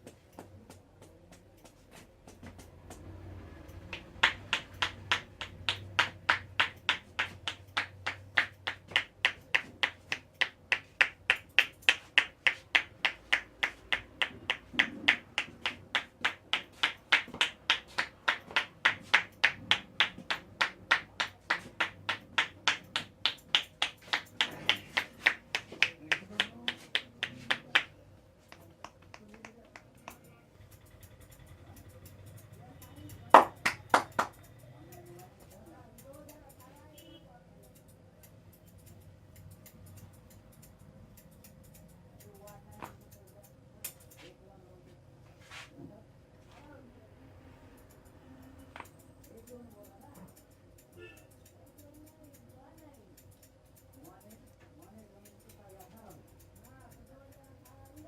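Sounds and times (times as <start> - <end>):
fast hand claps: 3.9 - 27.9, 33.4 - 34.4.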